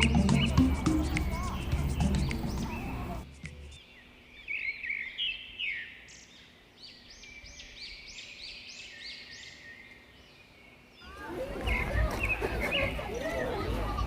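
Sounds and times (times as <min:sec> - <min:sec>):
bird whistled notes: 0:00.0 - 0:03.8
songbird chirps: 0:00.0 - 0:14.0.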